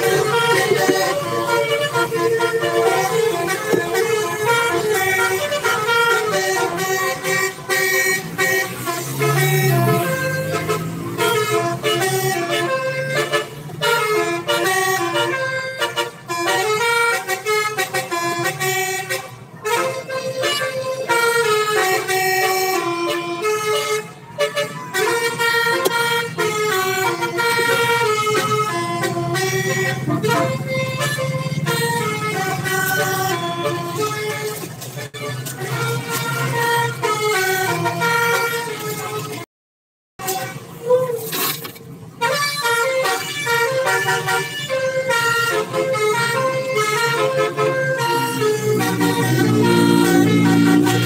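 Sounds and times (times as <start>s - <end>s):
bus musical horn melody: 0.0s - 39.5s, 40.2s - 51.0s.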